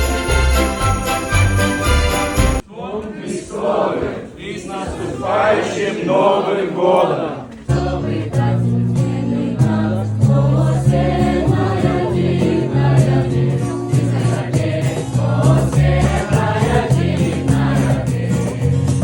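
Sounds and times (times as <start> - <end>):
instrumental accompaniment with bass: 0.0 - 2.6, 7.7 - 19.0
youth choir singing a carol: 0.0 - 19.0.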